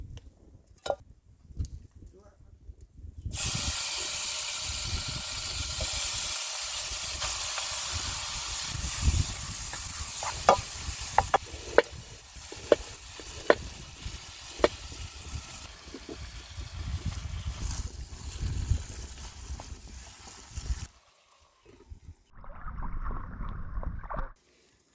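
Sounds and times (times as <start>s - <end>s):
food sizzling in a frying pan: 3.3s - 21.3s.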